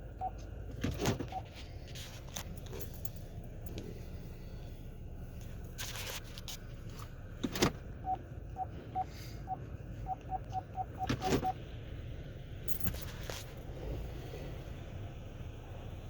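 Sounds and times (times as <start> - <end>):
low rumble: 1.5 - 16.0
keypad beeps: 8.0 - 11.6.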